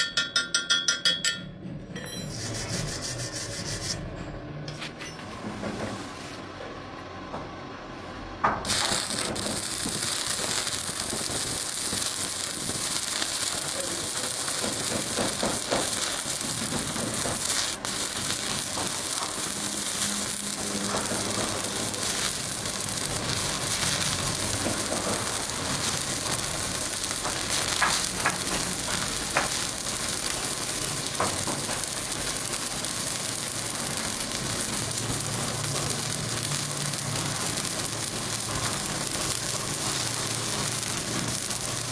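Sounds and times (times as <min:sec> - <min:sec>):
welding arc sizzling and popping: 0:08.4 - 0:41.9.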